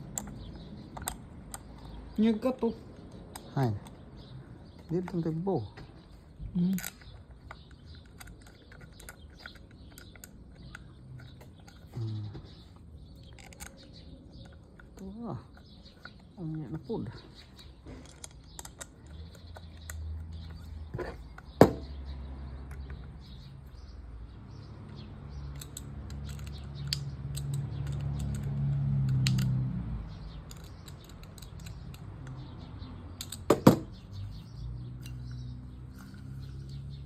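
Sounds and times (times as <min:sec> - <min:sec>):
sharp knocks: 0:21.6 - 0:22.0.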